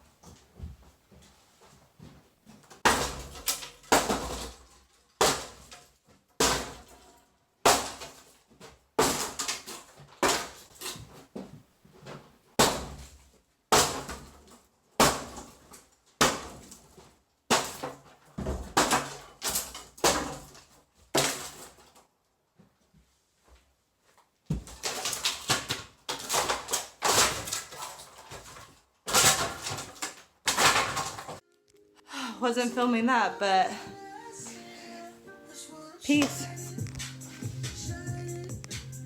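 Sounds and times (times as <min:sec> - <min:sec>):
clatter of breaking material: 0:02.6 - 0:11.3, 0:12.6 - 0:22.1, 0:24.6 - 0:31.4
hard demolition strikes: 0:02.8 - 0:05.8, 0:06.4 - 0:07.0, 0:24.6 - 0:31.4.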